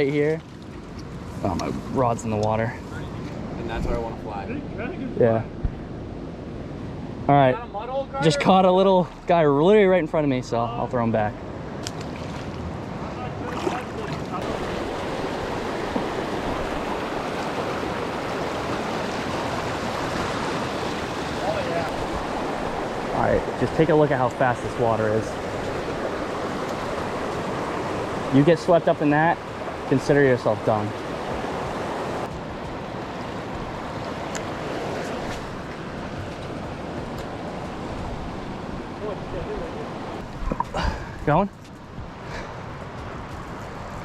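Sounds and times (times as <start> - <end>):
river rapids rushing: 14.0 - 32.3
river rapids rushing over rocks: 14.4 - 23.3.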